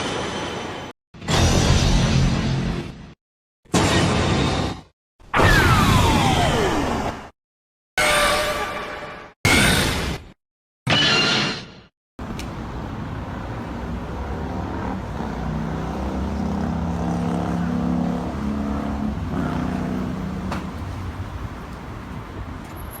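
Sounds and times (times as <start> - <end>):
steady traffic noise: 12.2 - 23.0
vehicle passing: 12.6 - 22.6.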